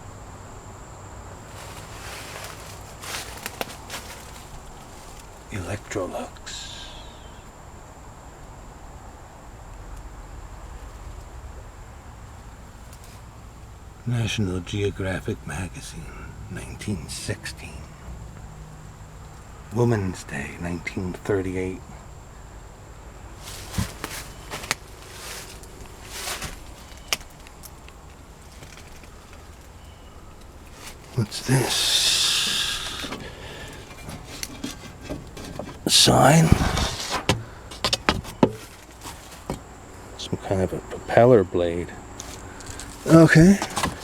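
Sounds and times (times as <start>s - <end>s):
high-pitched insect drone: 6.4s - 7.5s, 31.2s - 33.9s
objects knocking and clicking: 32.9s - 39.7s.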